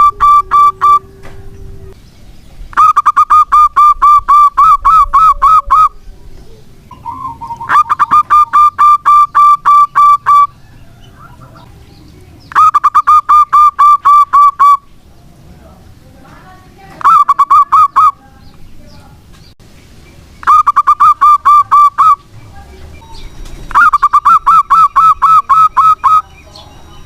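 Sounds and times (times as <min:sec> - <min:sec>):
dove cooing: 0:00.0 - 0:02.0, 0:02.8 - 0:11.8, 0:17.0 - 0:18.2, 0:20.4 - 0:22.3, 0:23.7 - 0:26.3.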